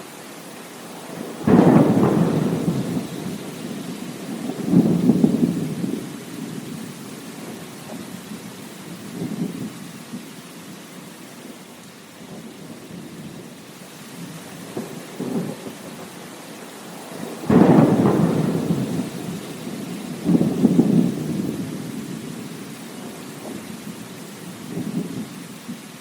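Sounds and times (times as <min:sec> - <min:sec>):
steady rain: 0:00.0 - 0:26.0
rolling thunder: 0:01.1 - 0:09.8, 0:17.0 - 0:25.3
loud thunderclap: 0:01.2 - 0:08.2, 0:17.1 - 0:22.6.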